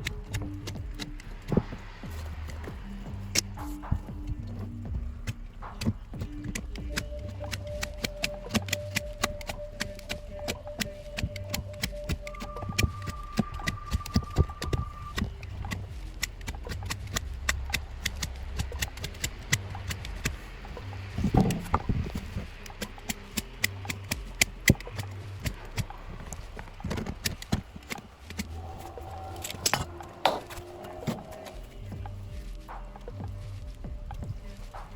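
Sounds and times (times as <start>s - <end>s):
hand tool clicks and knocks: 4.3s - 20.4s, 21.2s - 31.5s.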